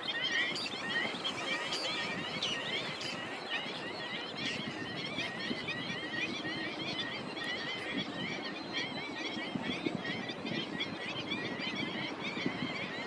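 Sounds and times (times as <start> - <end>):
flock of birds chirping: 0.0 - 13.0.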